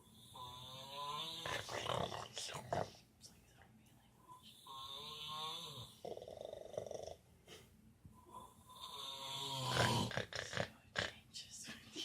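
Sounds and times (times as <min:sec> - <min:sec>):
person snoring: 0:00.3 - 0:02.3, 0:04.7 - 0:07.2, 0:08.4 - 0:11.1.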